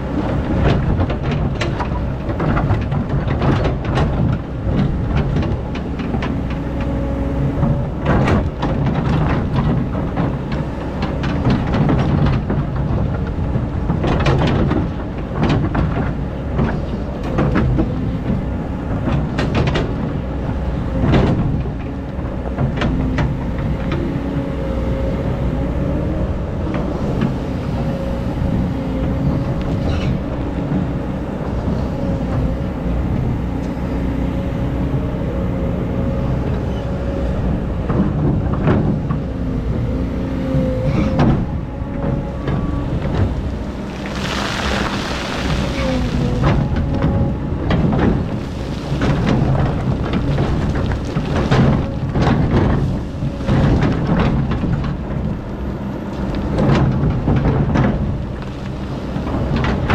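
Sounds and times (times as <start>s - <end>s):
excavator engine running: 0.0s - 59.9s
bucket clanking and scraping: 40.9s - 55.4s.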